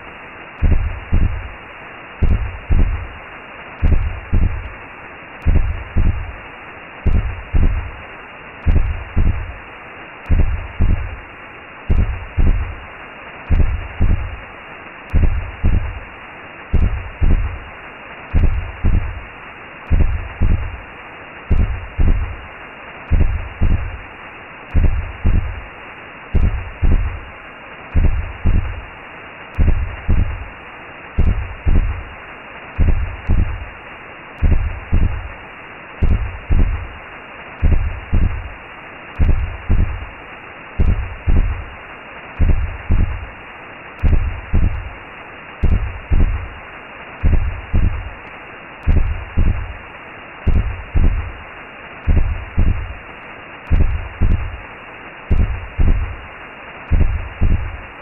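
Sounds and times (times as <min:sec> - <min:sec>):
steady whooshing noise: 0:00.0 - 0:58.0
slow heartbeat thumps: 0:00.6 - 0:01.6, 0:02.2 - 0:03.2, 0:03.8 - 0:04.8, 0:05.4 - 0:06.4, 0:07.0 - 0:08.0, 0:08.6 - 0:09.6, 0:10.2 - 0:11.2, 0:11.9 - 0:12.8, 0:13.5 - 0:14.4, 0:15.1 - 0:16.1, 0:16.7 - 0:17.7, 0:18.3 - 0:19.3, 0:19.9 - 0:20.9, 0:21.5 - 0:22.5, 0:23.1 - 0:24.0, 0:24.7 - 0:25.7, 0:26.3 - 0:27.3, 0:27.9 - 0:28.9, 0:29.6 - 0:30.5, 0:31.2 - 0:32.1, 0:32.8 - 0:33.8, 0:34.4 - 0:35.4, 0:36.0 - 0:37.0, 0:37.6 - 0:38.6, 0:39.2 - 0:40.2, 0:40.8 - 0:41.7, 0:42.4 - 0:43.3, 0:44.0 - 0:45.0, 0:45.6 - 0:46.6, 0:47.2 - 0:48.2, 0:48.8 - 0:49.8, 0:50.5 - 0:51.4, 0:52.0 - 0:53.0, 0:53.7 - 0:54.6, 0:55.3 - 0:56.2, 0:56.9 - 0:57.9.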